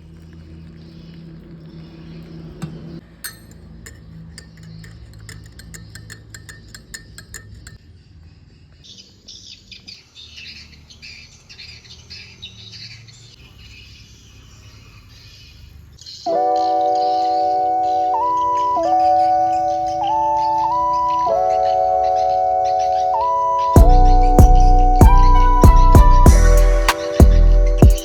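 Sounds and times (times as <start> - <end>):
birds chirping: 0.0 - 28.0
quick evenly spaced taps: 3.2 - 7.8, 25.6 - 28.0.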